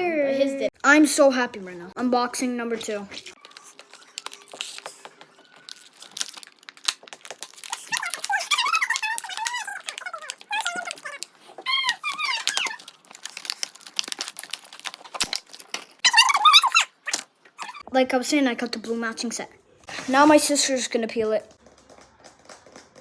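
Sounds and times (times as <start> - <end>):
plastic packaging crinkling: 3.4 - 17.3
high wavering squeaks: 7.6 - 13.0.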